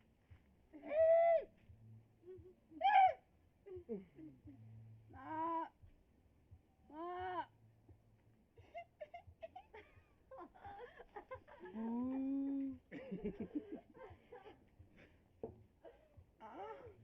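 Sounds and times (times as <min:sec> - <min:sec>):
person giggling laughter: 0:08.6 - 0:14.6.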